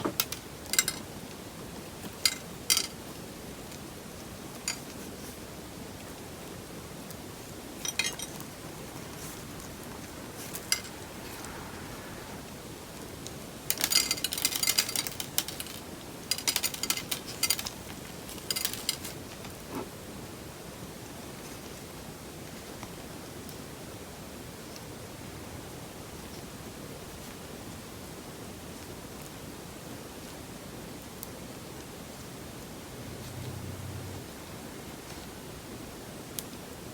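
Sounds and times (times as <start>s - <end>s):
steady hiss: 6.8s - 17.5s.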